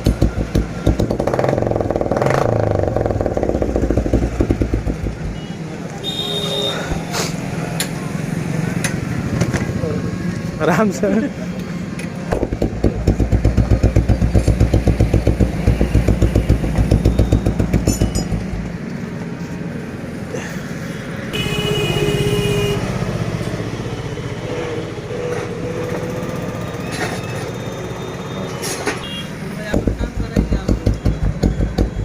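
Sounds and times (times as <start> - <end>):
motorcycle engine thumping: 0.0 - 5.6, 12.3 - 18.8, 29.7 - 32.0.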